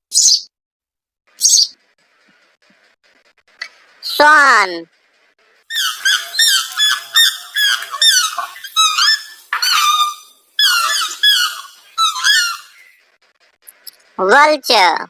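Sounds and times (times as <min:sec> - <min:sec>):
swan calling: 0:05.7 - 0:13.0.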